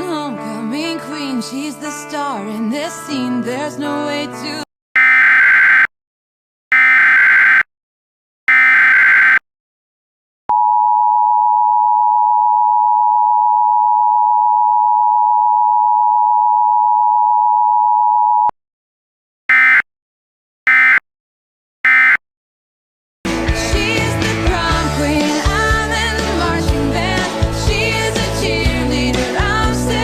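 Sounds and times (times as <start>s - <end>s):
two-tone attention signal: 21.9s - 22.2s.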